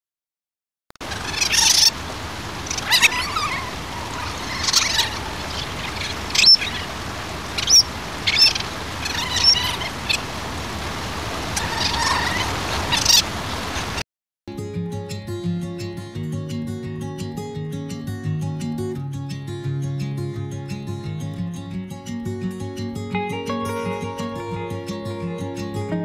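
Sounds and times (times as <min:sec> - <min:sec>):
high-pitched animal calls: 0:01.0 - 0:10.4, 0:11.4 - 0:14.0
outdoor background hiss: 0:01.0 - 0:14.0.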